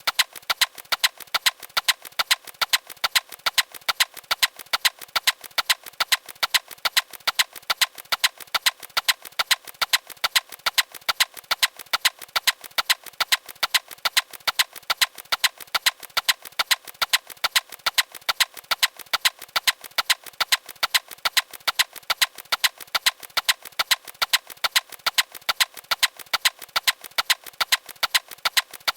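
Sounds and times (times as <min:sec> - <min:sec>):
sharp mechanical clicks: 0:00.0 - 0:28.9.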